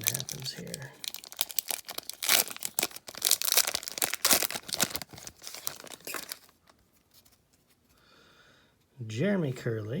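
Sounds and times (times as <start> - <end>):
wrapper tearing and crinkling: 0.0 - 6.6.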